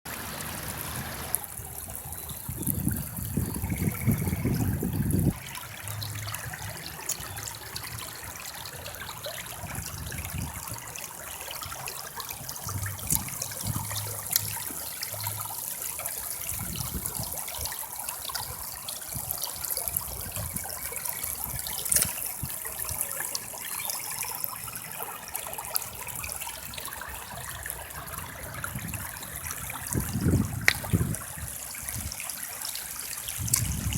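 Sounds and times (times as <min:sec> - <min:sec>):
river water flowing: 0:00.1 - 0:33.9
low rumble: 0:12.6 - 0:14.6.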